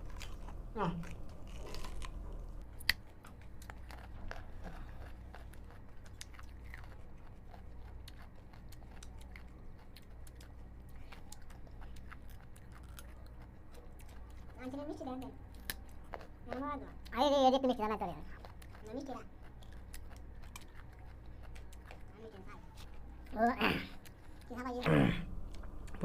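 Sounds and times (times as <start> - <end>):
crunching raw carrots: 0.0 - 14.6.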